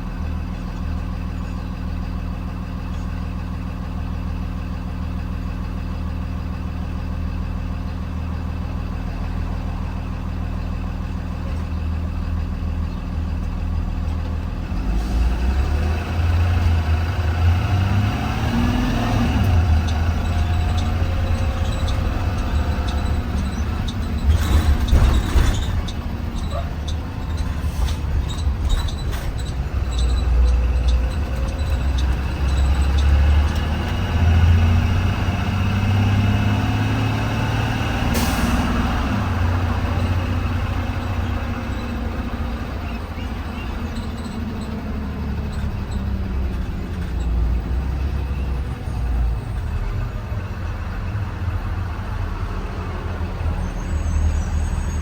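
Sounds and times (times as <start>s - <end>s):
bus engine rumble: 0.0s - 55.0s
bus body clicks and knocks: 21.8s - 33.7s.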